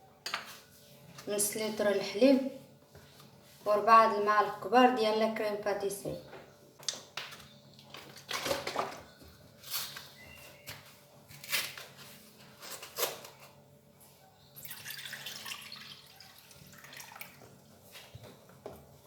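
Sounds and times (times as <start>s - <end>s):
liquid pouring into container: 14.6s - 17.5s.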